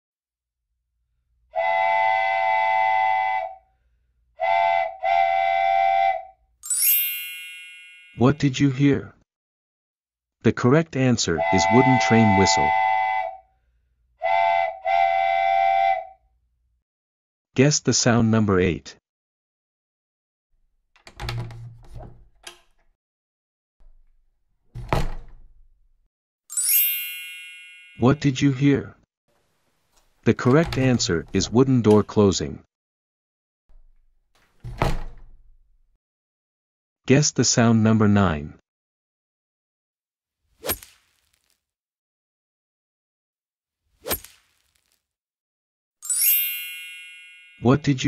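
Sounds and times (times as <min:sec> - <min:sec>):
wooden train whistle blasts: 0:01.5 - 0:03.7, 0:04.4 - 0:06.4, 0:11.4 - 0:13.5, 0:14.2 - 0:16.2
door rattle: 0:21.0 - 0:22.9, 0:23.8 - 0:25.8, 0:30.3 - 0:31.6, 0:33.7 - 0:35.7
wooden door closing: 0:21.0 - 0:22.9, 0:23.8 - 0:25.8, 0:30.4 - 0:31.6, 0:33.7 - 0:35.7.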